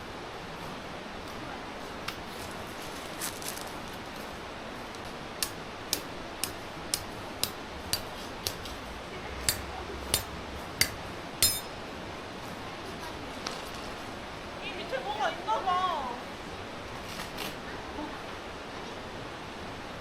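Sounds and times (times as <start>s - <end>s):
sharp evenly spaced clicks: 5.4s - 8.7s, 9.4s - 11.8s.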